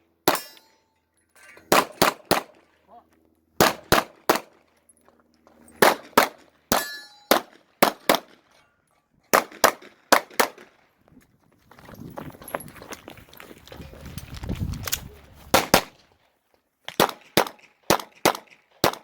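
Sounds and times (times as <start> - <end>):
steel target ringing: 0.3 - 1.7, 6.7 - 7.4
rapid pistol fire: 1.7 - 2.6, 3.6 - 4.5, 5.8 - 8.4, 17.0 - 19.0.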